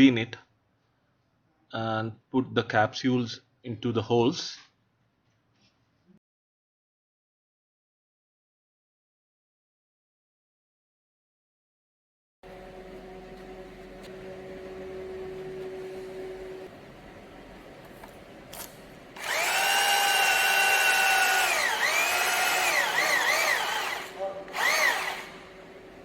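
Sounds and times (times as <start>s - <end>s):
electric drill whining: 19.2s - 26.0s.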